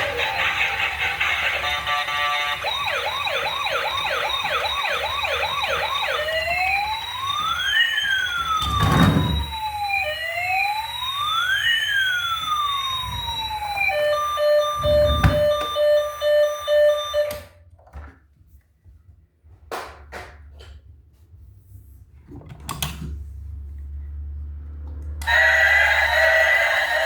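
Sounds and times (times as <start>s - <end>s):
emergency vehicle siren: 0.0s - 17.6s, 23.8s - 27.0s.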